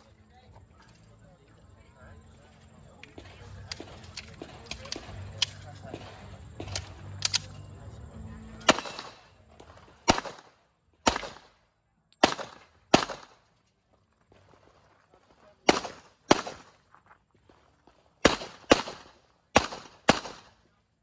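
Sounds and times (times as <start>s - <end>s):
handgun shots echoing: 3.2s - 7.6s, 8.6s - 9.4s, 10.0s - 13.4s, 15.7s - 16.7s, 18.2s - 20.5s.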